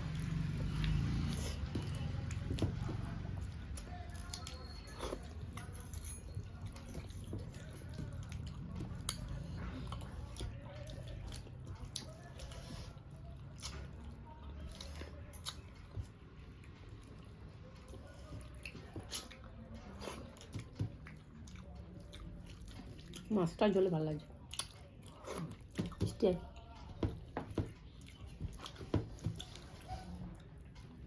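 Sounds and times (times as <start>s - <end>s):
person chewing: 3.4s - 5.7s, 6.6s - 23.3s, 24.4s - 26.0s, 27.7s - 29.8s.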